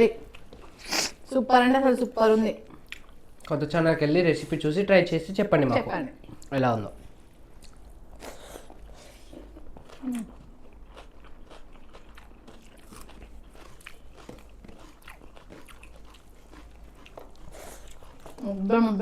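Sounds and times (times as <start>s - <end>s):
person chewing crunchy food: 0.2s - 1.2s, 2.7s - 3.6s, 7.3s - 18.6s.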